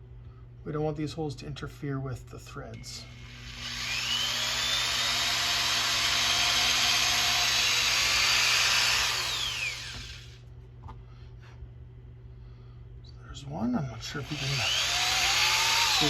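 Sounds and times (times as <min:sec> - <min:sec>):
power drill whining: 0:03.1 - 0:10.4, 0:14.0 - 0:16.0.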